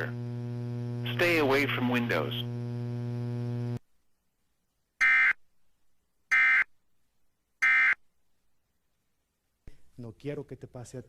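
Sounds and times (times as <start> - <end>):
electrical hum: 0.0 - 3.8.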